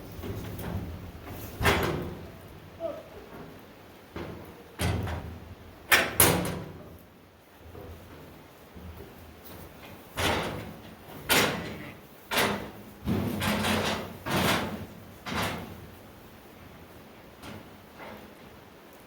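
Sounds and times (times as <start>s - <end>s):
metal panels clanging: 10.2s - 15.9s.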